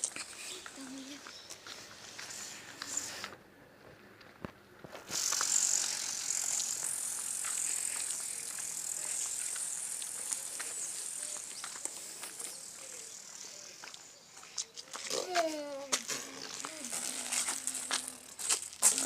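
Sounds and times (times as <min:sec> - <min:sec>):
steady high hiss: 0:05.0 - 0:13.5.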